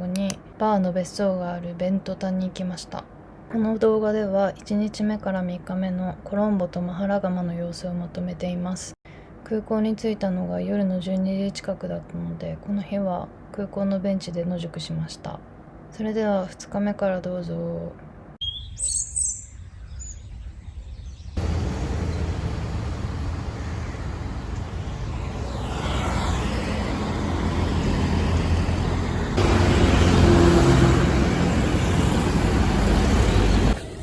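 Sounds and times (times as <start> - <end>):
faint bird chirps: 18.4 - 21.4
road traffic: 21.4 - 34.0.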